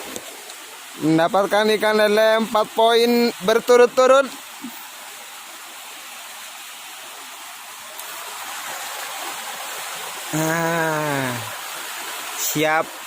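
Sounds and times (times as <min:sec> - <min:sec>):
flowing water hissing: 0:00.0 - 0:13.0
man's long falling vocal sound: 0:10.3 - 0:11.5.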